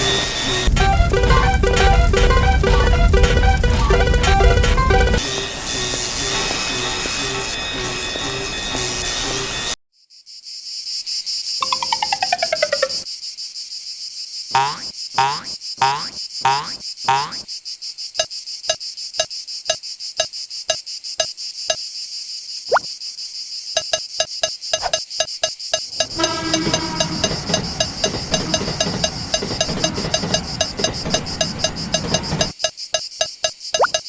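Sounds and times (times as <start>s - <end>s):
music: 0.0s - 9.8s
regular ticking: 0.6s - 5.3s, 14.6s - 17.4s, 23.8s - 34.0s
high cricket-like chirring: 5.1s - 34.0s
falling chirps: 11.6s - 13.1s, 14.6s - 17.5s, 23.8s - 34.0s.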